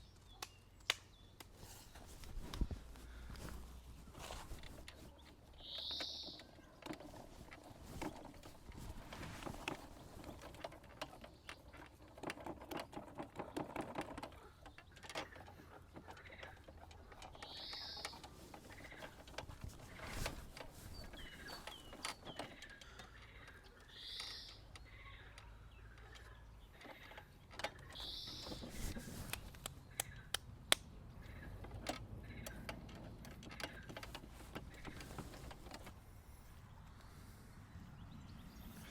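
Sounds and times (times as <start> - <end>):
bird calling: 0.0 - 10.4, 14.4 - 30.4.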